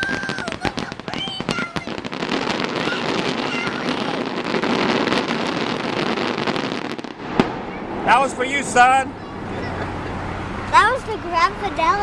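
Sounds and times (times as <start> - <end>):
sharp firework bang: 0.0 - 8.6
fireworks crackling: 0.0 - 12.0.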